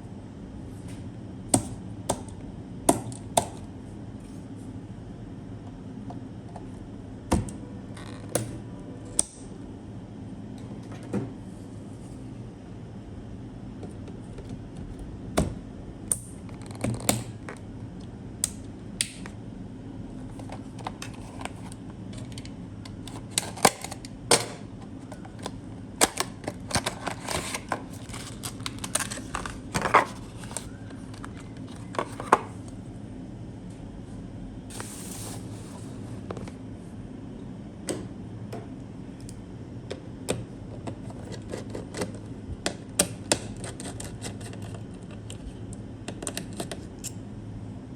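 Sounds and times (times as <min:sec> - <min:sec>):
packaging rustle: 0:26.4 - 0:32.3.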